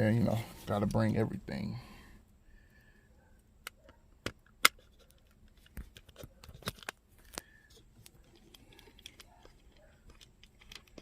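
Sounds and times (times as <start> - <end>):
small objects clicking and knocking: 4.2 - 11.0.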